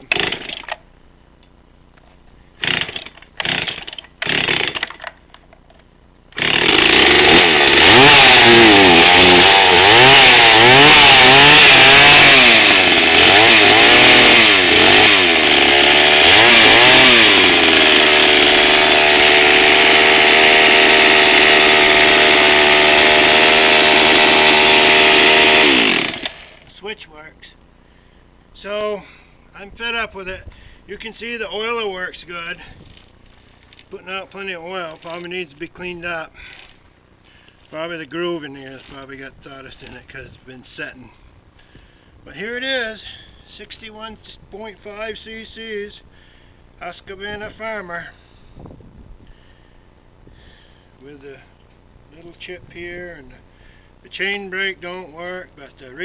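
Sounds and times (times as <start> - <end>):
chainsaw engine running: 0.0 - 0.8, 2.6 - 5.1, 6.3 - 26.7
chainsaw recoil starter pulls: 0.0 - 0.8, 2.6 - 26.8, 36.4 - 36.8.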